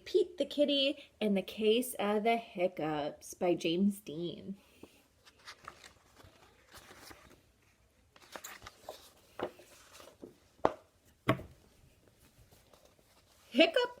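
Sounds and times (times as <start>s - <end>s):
paper rustling: 5.2s - 10.5s, 11.9s - 13.6s.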